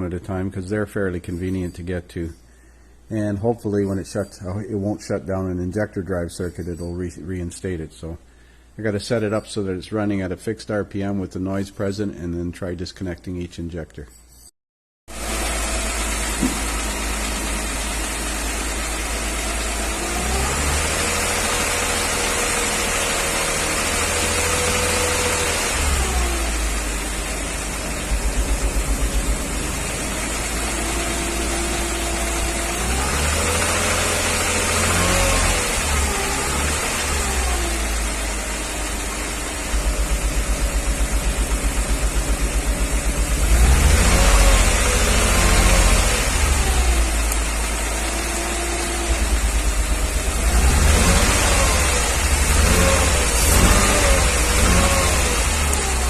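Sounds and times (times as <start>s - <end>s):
car engine running: 15.1s - 56.0s.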